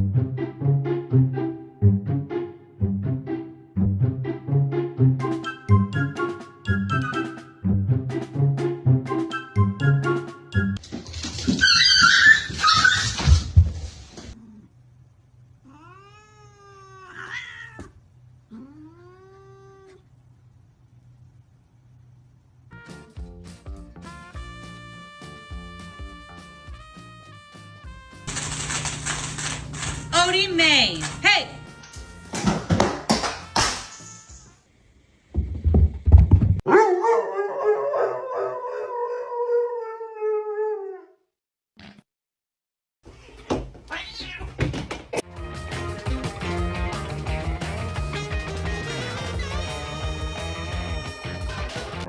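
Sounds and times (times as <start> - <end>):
cat meowing: 15.6 - 17.9, 43.9 - 44.6
dog howling: 36.7 - 41.2.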